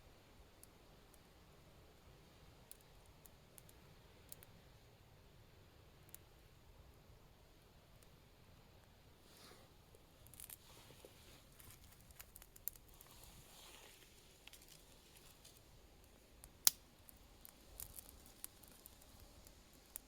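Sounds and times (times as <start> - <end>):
faint rustling and scraping: 9.2 - 16.4
small clicks: 16.4 - 20.0.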